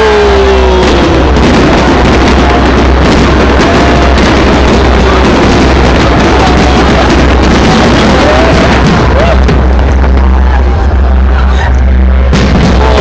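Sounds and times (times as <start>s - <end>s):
deep rumble: 0.0s - 13.0s
fireworks crackling bursts: 0.0s - 13.0s.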